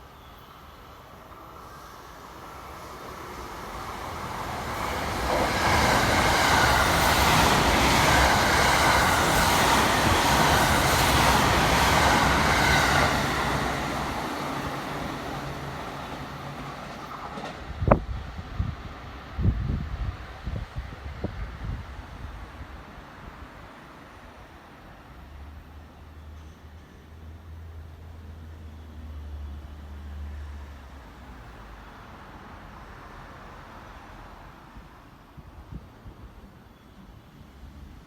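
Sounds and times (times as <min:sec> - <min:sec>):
train wheels rumbling on rail: 0:00.7 - 0:23.8.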